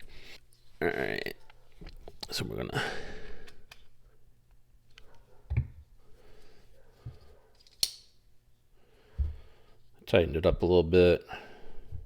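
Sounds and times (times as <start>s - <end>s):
sharp click of knife: 7.7s - 8.1s.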